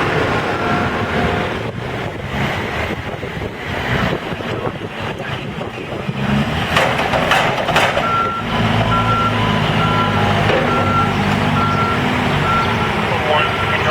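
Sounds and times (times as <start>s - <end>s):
diesel engine running: 0.0s - 13.9s
sharp knocks: 6.6s - 8.9s, 10.4s - 11.0s
backup alarm beeping: 8.0s - 13.9s.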